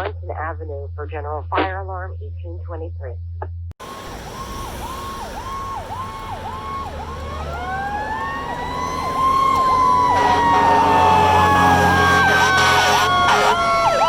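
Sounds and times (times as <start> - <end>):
electronic siren: 3.8 - 14.0
mechanical siren wailing: 3.8 - 14.0.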